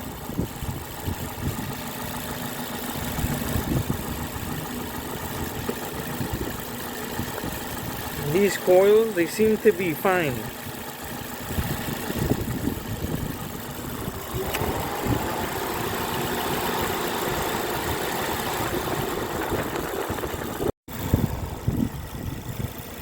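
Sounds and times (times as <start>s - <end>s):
car engine idling: 0.0s - 23.0s.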